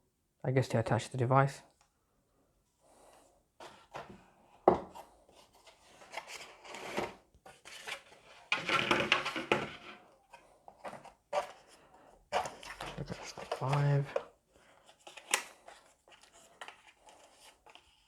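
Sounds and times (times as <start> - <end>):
cardboard and plastic rustling: 4.8 - 18.0.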